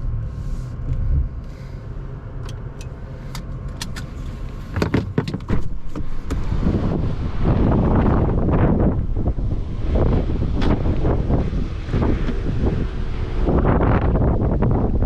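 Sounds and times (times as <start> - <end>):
low road rumble inside car: 0.0 - 15.0
clicks knocks and rattles: 4.7 - 6.5.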